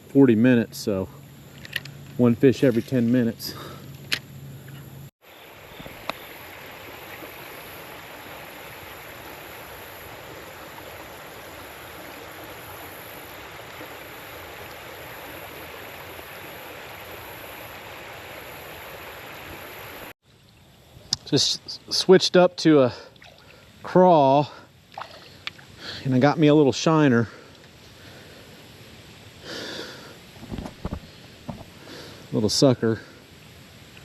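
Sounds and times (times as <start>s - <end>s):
flowing river water: 5.2s - 20.1s, 23.0s - 23.9s, 24.8s - 25.9s.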